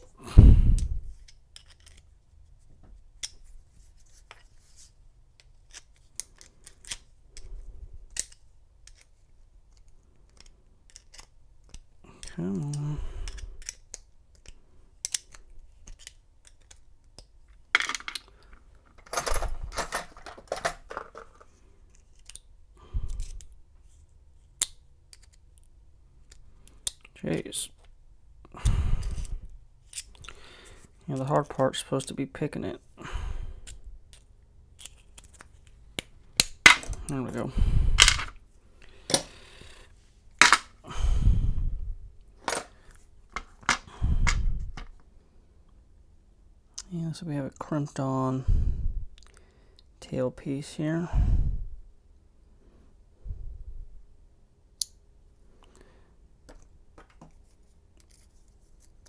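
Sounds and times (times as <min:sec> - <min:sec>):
padlock parts clicking and clattering: 0:01.2 - 0:02.1, 0:13.2 - 0:22.5, 0:34.1 - 0:37.4, 0:38.0 - 0:38.4, 0:40.4 - 0:40.8.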